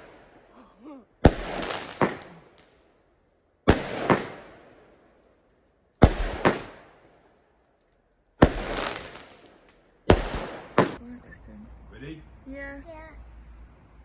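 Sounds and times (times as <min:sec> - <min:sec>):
firework bangs: 0:00.0 - 0:00.5, 0:01.2 - 0:02.9, 0:03.6 - 0:05.1, 0:06.0 - 0:07.4, 0:08.4 - 0:11.0
firework hiss: 0:01.3 - 0:02.7, 0:08.4 - 0:09.5.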